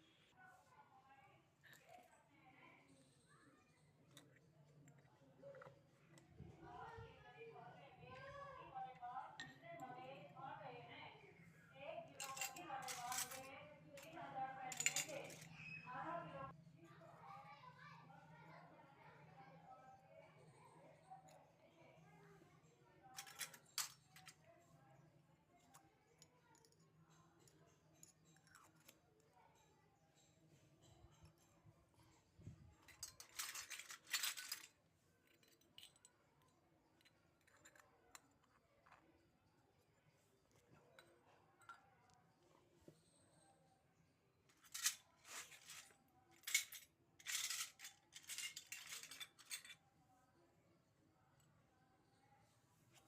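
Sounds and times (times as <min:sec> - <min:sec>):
plastic toy pieces clicking: 0:32.9 - 0:36.0
plastic packaging rustling and scraping: 0:44.6 - 0:49.6.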